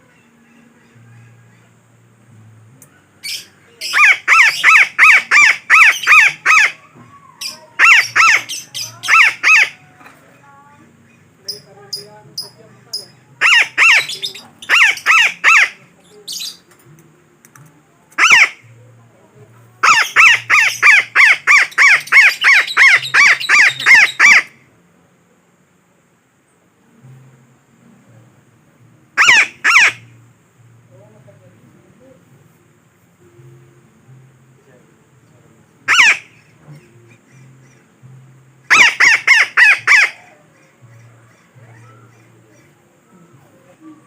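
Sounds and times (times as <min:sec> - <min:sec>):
parakeet calling: 0:03.2 - 0:06.8, 0:07.4 - 0:10.0, 0:11.0 - 0:16.7, 0:18.2 - 0:18.7, 0:19.8 - 0:24.5, 0:29.2 - 0:30.1, 0:35.8 - 0:38.0, 0:38.7 - 0:42.8.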